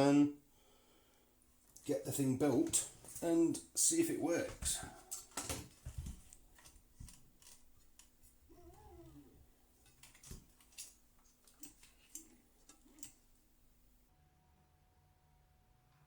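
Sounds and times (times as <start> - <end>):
faint clicks and knocks: 4.4 - 14.0.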